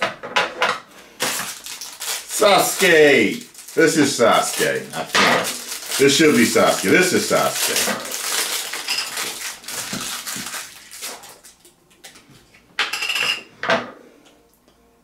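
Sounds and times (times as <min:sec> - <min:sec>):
plastic packaging rustling: 0:01.1 - 0:12.5
packaging crinkling: 0:01.2 - 0:12.2.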